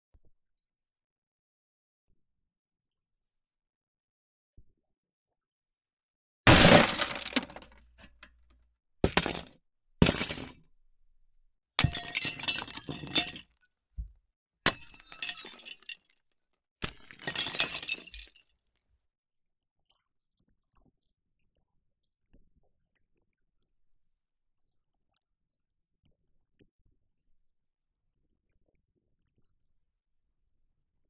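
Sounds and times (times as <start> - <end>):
glass shattering: 6.5 - 8.2, 9.0 - 10.6, 11.8 - 13.5, 14.7 - 16.1, 16.8 - 18.4
tinkle of falling glass shards: 14.7 - 16.2.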